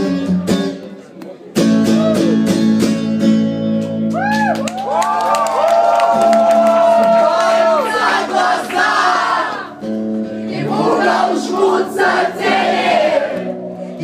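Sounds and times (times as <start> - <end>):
live rock band playing: 0.0 - 4.4
audience singing along: 7.4 - 13.9.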